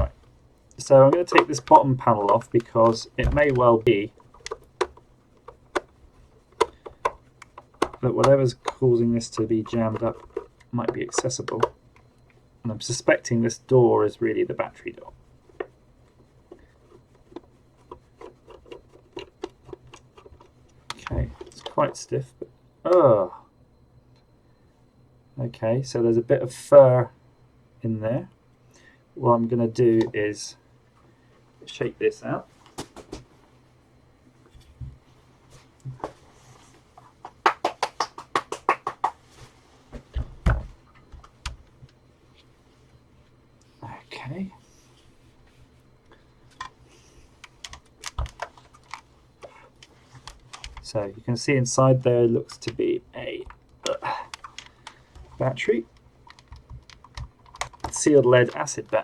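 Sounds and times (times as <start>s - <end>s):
plastic clicks taps and scrapes: 0.0s - 12.4s, 15.1s - 21.8s, 47.4s - 50.8s, 53.4s - 58.6s
plastic housing knocking and rattling: 1.1s - 11.8s, 56.3s - 58.0s.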